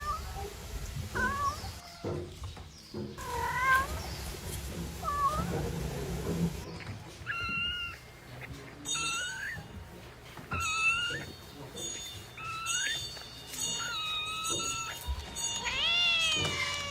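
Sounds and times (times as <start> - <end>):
cat meowing: 1.2 - 1.8, 3.2 - 4.0, 5.0 - 5.6, 7.2 - 8.1, 8.9 - 9.7, 10.5 - 11.4, 12.4 - 13.1, 13.8 - 16.9.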